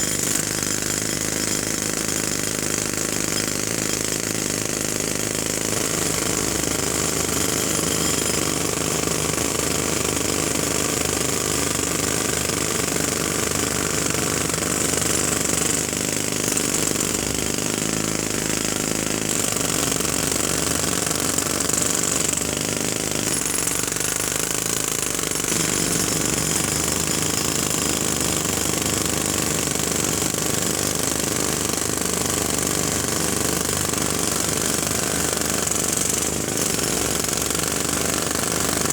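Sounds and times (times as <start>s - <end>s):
jackhammer hammering: 0.0s - 38.9s.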